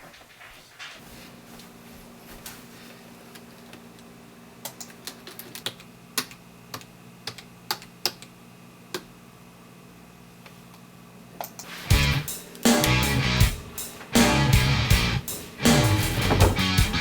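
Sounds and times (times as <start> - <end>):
steady low hum: 11.8 - 17.0.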